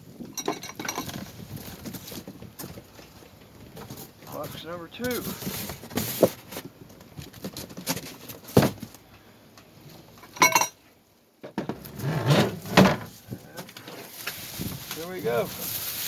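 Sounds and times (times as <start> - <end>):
cardboard box knocks and scraping: 7.6 - 8.9.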